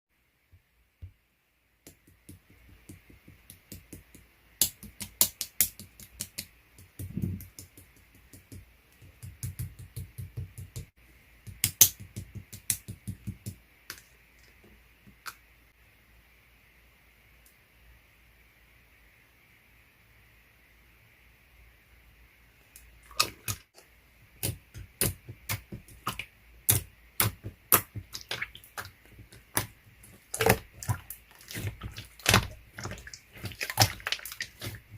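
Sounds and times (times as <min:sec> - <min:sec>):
slime squishing: 0:23.0 - 0:23.8, 0:24.4 - 0:34.9
slime clicking and popping: 0:30.3 - 0:34.8.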